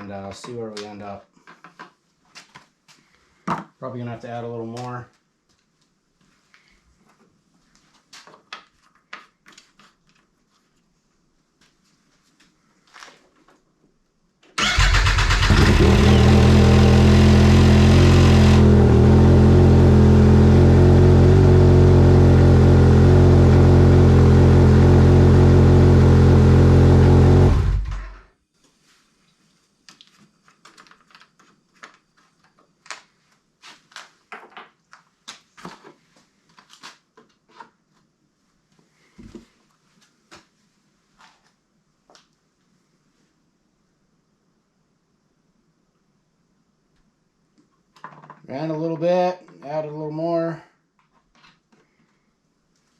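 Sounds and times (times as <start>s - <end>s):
snowmobile engine running: 15.5s - 28.2s.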